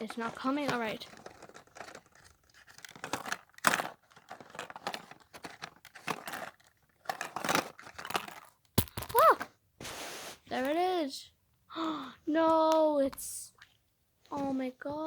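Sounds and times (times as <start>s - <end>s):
plastic scraping and crinkling: 0.0s - 9.5s
plastic ball clicking open: 2.7s - 9.4s.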